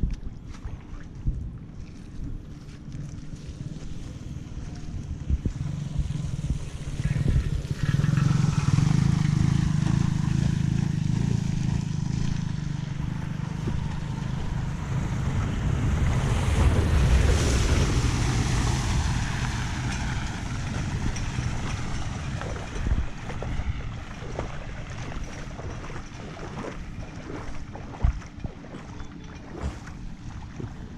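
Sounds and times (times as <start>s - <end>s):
flood water rushing at a drain: 4.9s - 30.9s.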